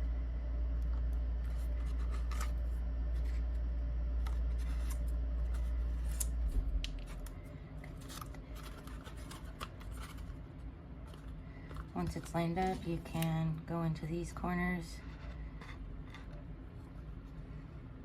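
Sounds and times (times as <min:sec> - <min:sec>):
steady low hum: 0:00.0 - 0:18.0
paper and chipboard clicks and rustles: 0:00.9 - 0:03.6, 0:04.2 - 0:13.5.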